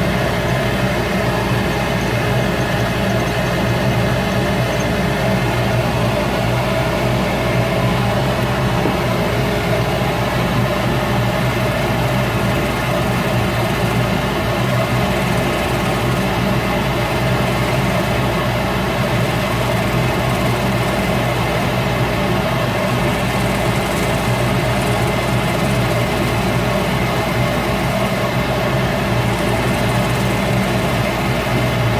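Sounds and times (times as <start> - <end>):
wood lathe running: 0.0 - 31.9.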